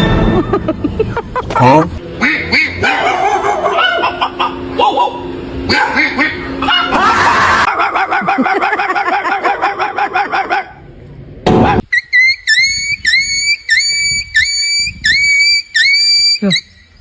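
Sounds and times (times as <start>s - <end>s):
high-pitched voice laughing: 0.3s - 10.7s
high whistle-like chirps: 11.9s - 17.0s.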